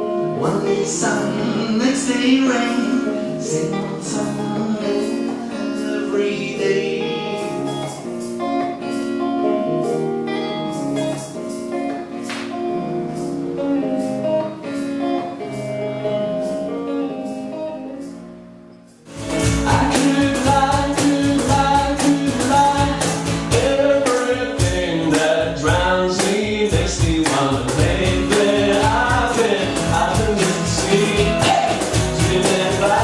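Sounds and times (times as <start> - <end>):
person singing: 0.0 - 8.2, 19.1 - 33.0
acoustic guitar: 0.0 - 33.0.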